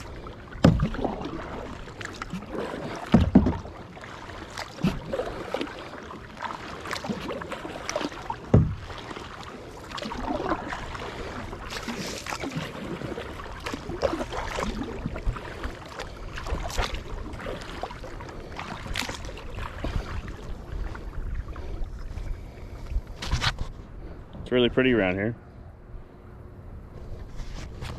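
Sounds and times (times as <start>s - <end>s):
kayak paddle splashing: 0.0s - 23.8s
low thump: 3.1s - 3.6s, 8.5s - 8.9s.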